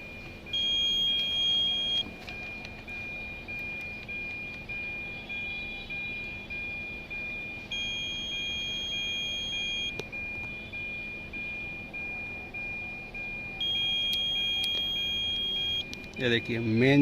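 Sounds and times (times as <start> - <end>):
car warning buzzer beeping: 0.0 - 17.0
multimeter continuity buzzer beep: 0.5 - 2.1, 2.9 - 17.0.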